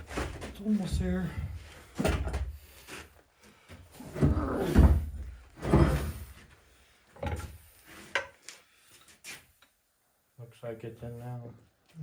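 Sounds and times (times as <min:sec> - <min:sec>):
metal parts clunking and scraping: 0:07.2 - 0:08.4.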